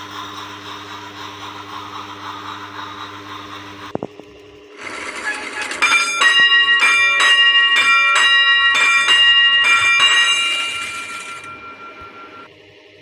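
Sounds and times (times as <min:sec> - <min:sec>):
bell ringing: 0:04.8 - 0:12.5.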